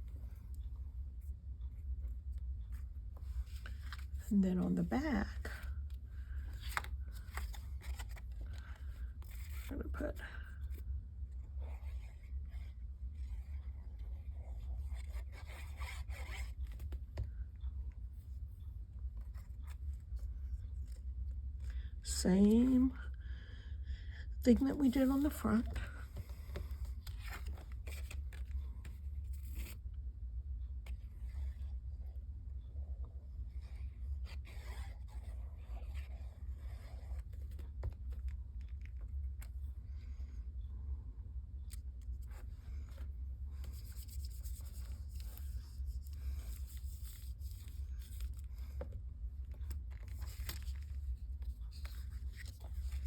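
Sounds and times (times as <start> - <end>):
steady low hum: 0.0 - 53.0
paper rustling and scraping: 2.6 - 10.8, 24.9 - 29.8, 41.7 - 53.0.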